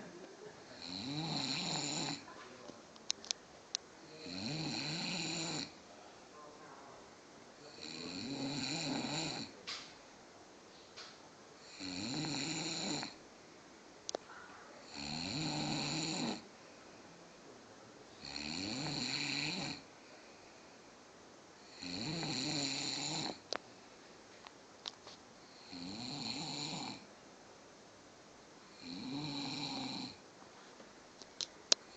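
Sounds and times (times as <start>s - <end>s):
man snoring: 0.8s - 2.3s, 4.0s - 5.8s, 7.7s - 9.6s, 11.6s - 13.2s, 14.8s - 16.5s, 18.2s - 19.9s, 21.6s - 23.5s, 25.5s - 27.1s, 28.7s - 30.2s.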